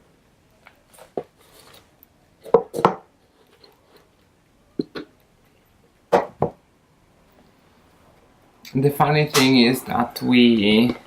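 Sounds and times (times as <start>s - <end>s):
small objects knocking and tapping: 2.4s - 3.1s, 4.8s - 5.3s.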